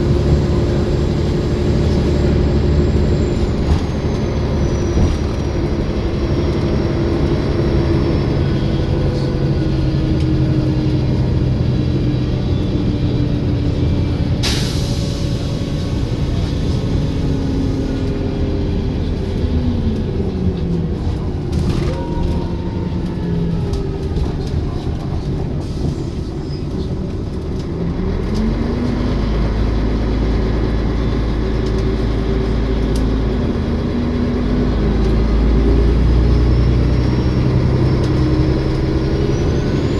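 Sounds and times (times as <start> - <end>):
bus diesel engine changing gears: 0.0 - 39.9.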